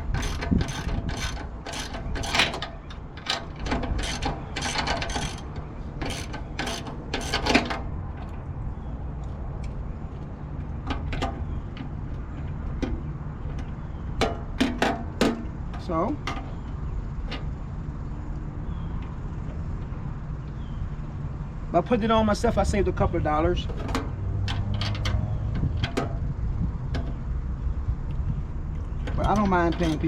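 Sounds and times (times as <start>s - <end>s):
ratchet wrench clicking: 0.0s - 7.8s, 29.1s - 30.0s.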